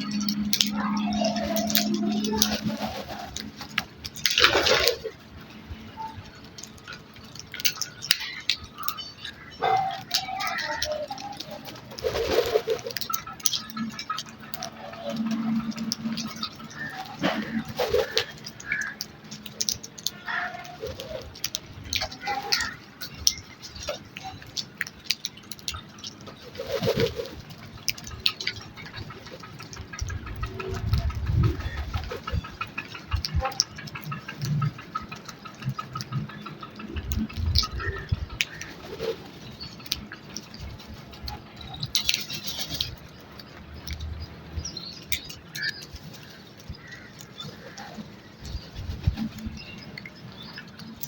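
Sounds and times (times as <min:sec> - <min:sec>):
wings flapping: 0:00.0 - 0:51.0
low rumble: 0:28.8 - 0:32.6.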